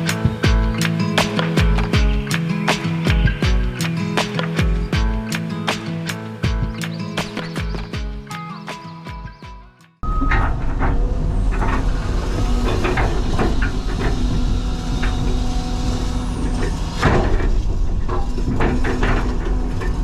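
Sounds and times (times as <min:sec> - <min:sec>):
excavator diesel engine rumbling: 0:10.0 - 0:20.0
metal knocks and clanks: 0:10.0 - 0:20.0.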